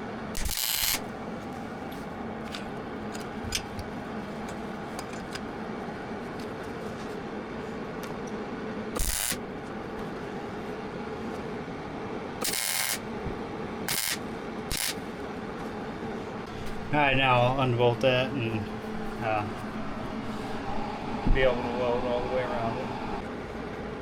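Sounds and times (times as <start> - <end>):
steady background hum: 0.0 - 24.0
tack welds crackling hiss: 0.4 - 1.1, 9.0 - 9.4, 12.4 - 13.0, 13.9 - 15.0.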